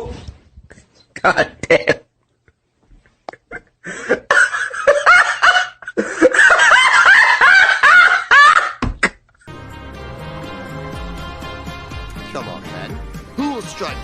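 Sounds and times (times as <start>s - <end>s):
person laughing hard: 3.3s - 9.2s
music: 9.5s - 14.0s.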